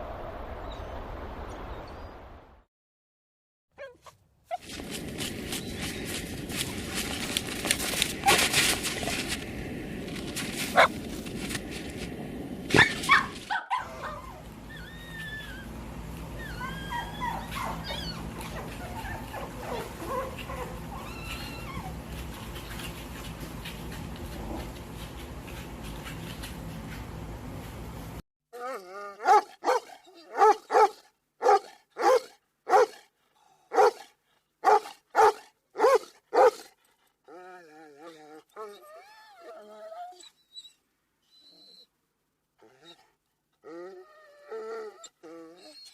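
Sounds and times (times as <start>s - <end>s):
dog whimpering and yipping: 3.8s - 4.7s, 12.8s - 15.7s, 16.4s - 22.8s, 37.3s - 41.9s, 43.6s - 45.9s
dog barking: 12.7s - 14.4s, 17.1s - 20.8s, 29.2s - 33.1s, 33.7s - 36.7s.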